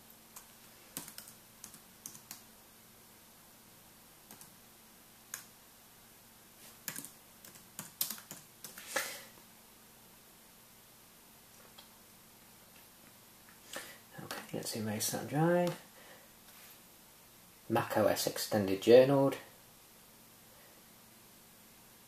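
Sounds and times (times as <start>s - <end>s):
faint steady hum: 0.0s - 22.0s
laptop keyboard and trackpad clicks: 6.9s - 8.8s.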